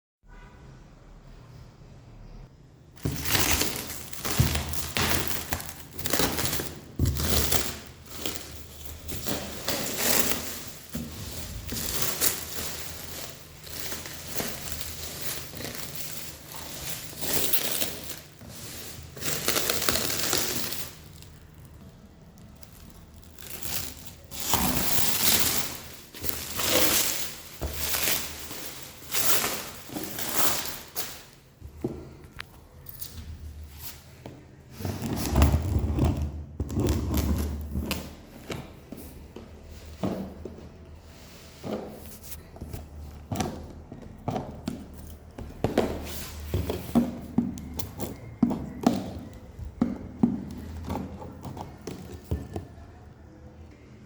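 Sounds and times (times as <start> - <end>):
packaging crinkling and rustling: 3.0 - 31.4.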